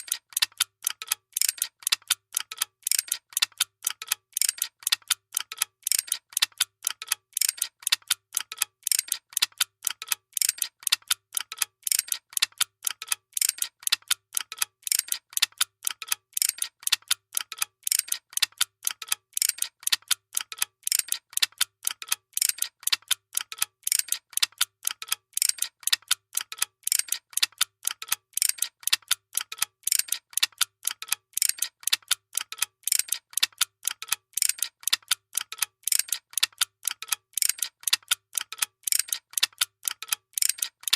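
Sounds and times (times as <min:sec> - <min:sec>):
machine mechanical clicking: 0:00.0 - 0:40.9.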